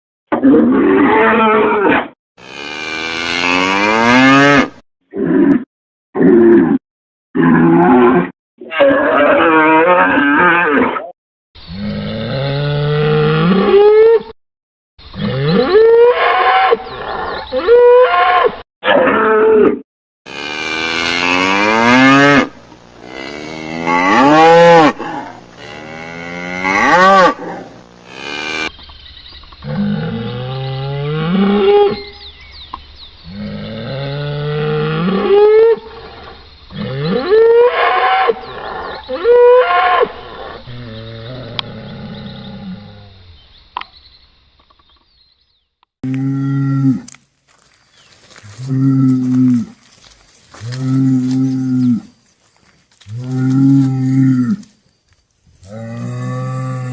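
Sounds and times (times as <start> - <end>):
cattle mooing and bellowing: 0.5 - 5.5, 7.4 - 11.0, 11.7 - 14.3, 15.1 - 28.7, 33.3 - 43.1, 46.0 - 54.7, 55.6 - 56.9.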